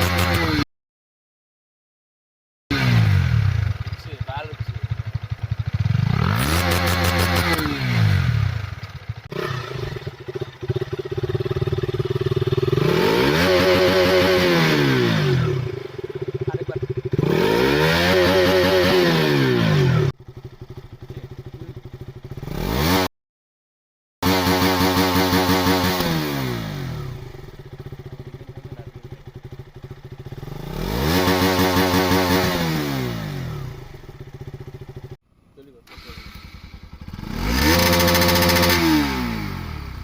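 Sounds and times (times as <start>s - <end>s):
motorcycle engine revving and idling: 0.0s - 0.7s, 2.7s - 23.1s, 24.2s - 40.0s.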